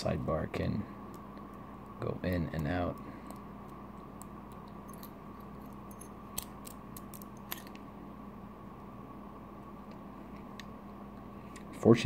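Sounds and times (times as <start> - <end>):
steady background hum: 0.0 - 12.0
metal lock parts clicking: 4.5 - 7.8.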